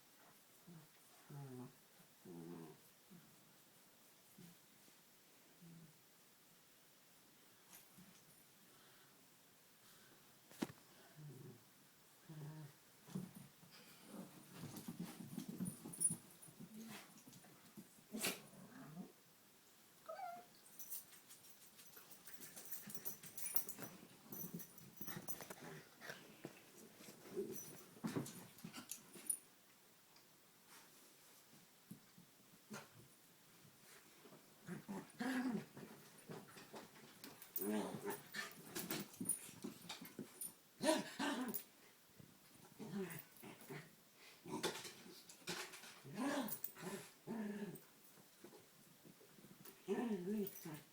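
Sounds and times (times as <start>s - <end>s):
dogs scuffling: 13.1s - 18.0s
dogs growling and whining: 34.6s - 36.4s.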